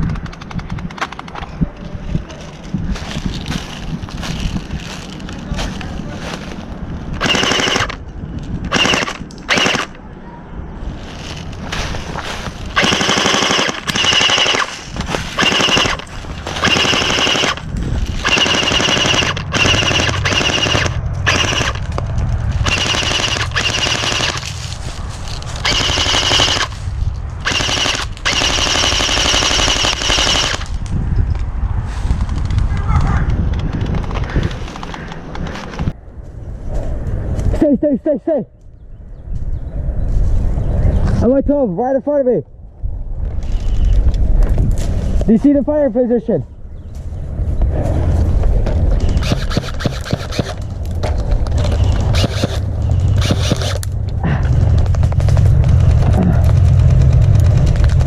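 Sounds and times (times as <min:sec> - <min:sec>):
airsoft rifle full-auto bursts: 0:07.2 - 0:08.0, 0:08.7 - 0:10.0, 0:12.8 - 0:14.7, 0:15.4 - 0:17.6, 0:18.2 - 0:21.8, 0:22.6 - 0:24.5, 0:25.6 - 0:26.8, 0:27.4 - 0:30.7, 0:49.2 - 0:50.6, 0:52.1 - 0:53.8.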